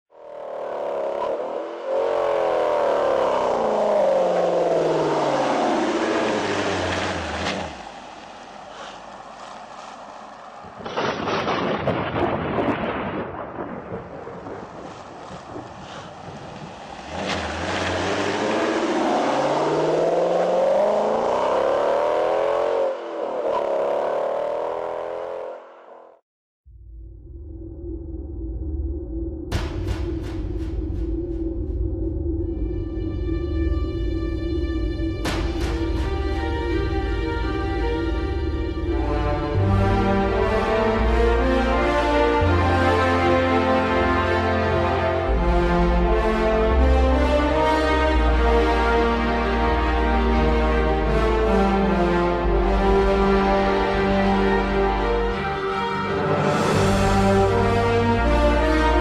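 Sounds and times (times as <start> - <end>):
car engine revving: 0.1 - 11.5, 14.9 - 26.2.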